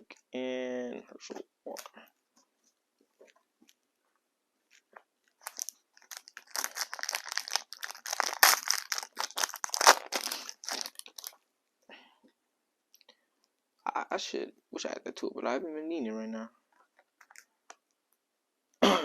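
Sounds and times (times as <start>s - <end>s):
wrapper tearing and crinkling: 5.4s - 11.4s.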